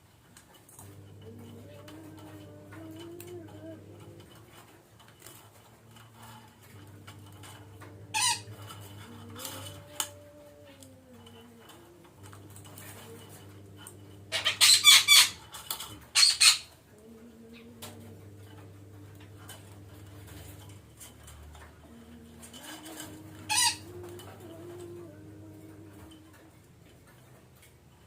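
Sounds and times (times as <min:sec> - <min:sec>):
steady low hum: 0:00.6 - 0:27.1
parakeets squawking: 0:08.1 - 0:08.7, 0:14.3 - 0:15.4, 0:16.1 - 0:16.7, 0:23.0 - 0:24.0.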